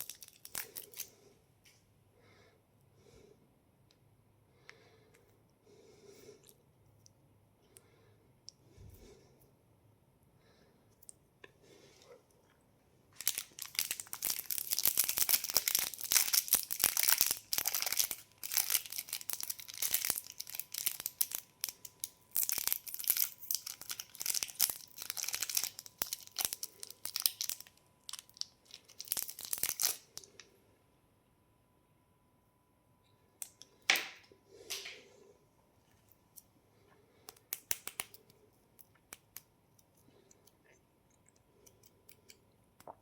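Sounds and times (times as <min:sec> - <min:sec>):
candy packaging crinkling: 0:00.0 - 0:01.2, 0:13.1 - 0:30.5.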